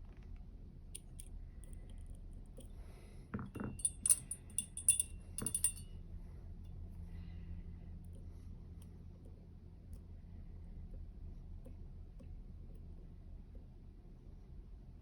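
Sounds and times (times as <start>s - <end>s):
lock picks clicking in lock: 3.6s - 5.8s.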